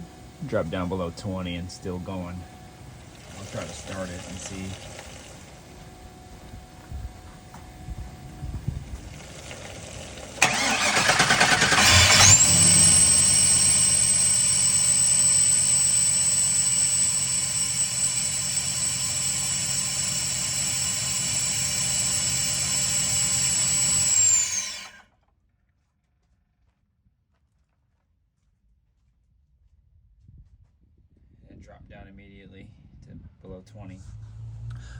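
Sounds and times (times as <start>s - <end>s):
car engine cranking and idling: 0.0s - 25.0s
high-pitched engine whine: 0.0s - 25.1s.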